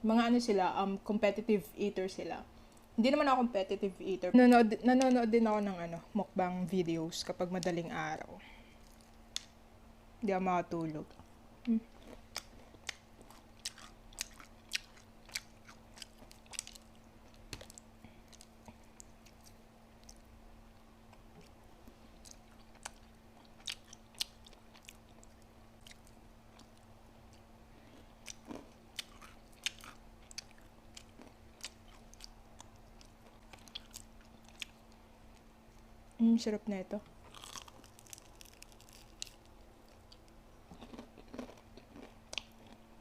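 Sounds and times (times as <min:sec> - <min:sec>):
faint steady hum: 0:00.0 - 0:43.0
person chewing and biting food: 0:11.9 - 0:35.9, 0:37.2 - 0:42.9.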